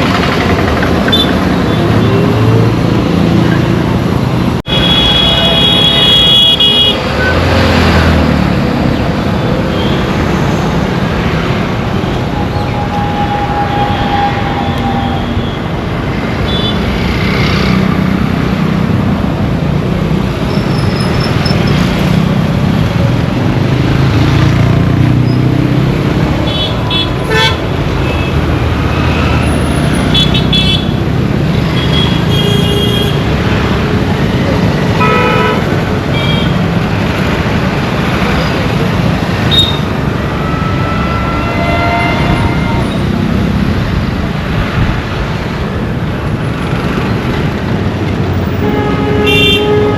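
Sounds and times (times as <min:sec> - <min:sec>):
heavy road traffic rumble: 0:00.0 - 0:49.9
vehicle horns tooting: 0:04.7 - 0:07.4, 0:26.4 - 0:28.4, 0:31.8 - 0:33.3, 0:35.0 - 0:36.6, 0:39.4 - 0:43.1, 0:48.5 - 0:49.9.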